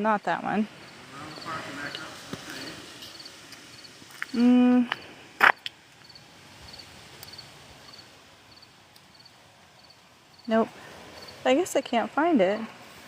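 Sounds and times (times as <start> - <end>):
insects chirping: 0.7 - 4.5, 5.4 - 11.8.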